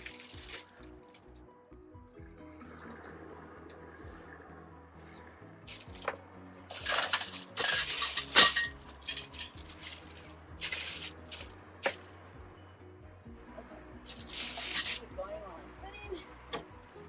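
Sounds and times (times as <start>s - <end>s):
metal parts clinking and rattling: 0.0s - 1.2s, 5.7s - 12.2s, 14.1s - 15.1s.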